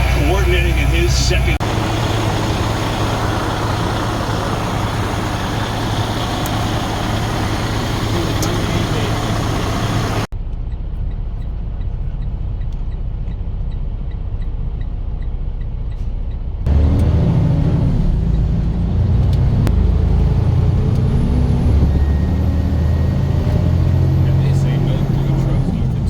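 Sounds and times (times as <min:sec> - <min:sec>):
truck engine rumbling: 0:00.0 - 0:26.0
faint regular ticking: 0:00.1 - 0:10.3.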